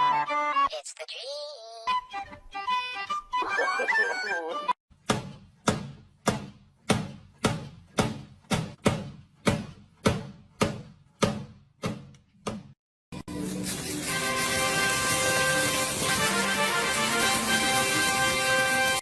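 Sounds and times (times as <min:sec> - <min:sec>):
music: 0:00.0 - 0:00.9, 0:01.5 - 0:04.8, 0:13.1 - 0:19.0
sharp percussive thuds: 0:05.0 - 0:12.8.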